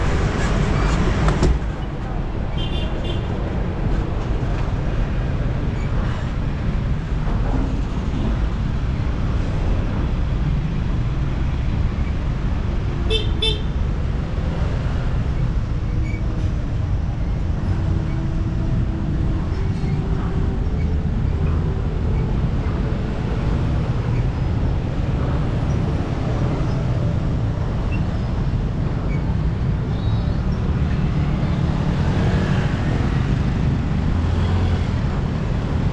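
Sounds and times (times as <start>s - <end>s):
traffic rumble and road noise: 0.0s - 35.9s
vehicle horns honking: 2.6s - 3.3s, 13.1s - 13.7s.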